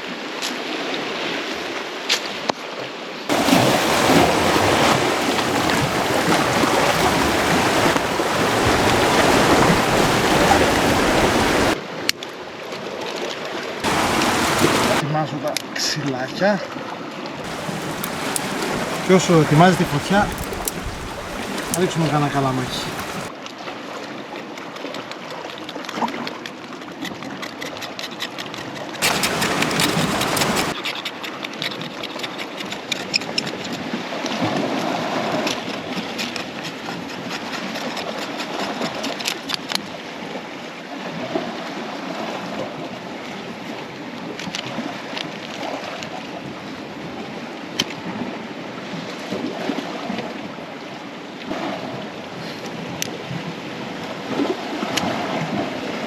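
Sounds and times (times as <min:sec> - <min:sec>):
sea water washing among rocks: 0:03.3 - 0:11.8, 0:13.8 - 0:15.0, 0:17.4 - 0:23.3, 0:29.0 - 0:30.8.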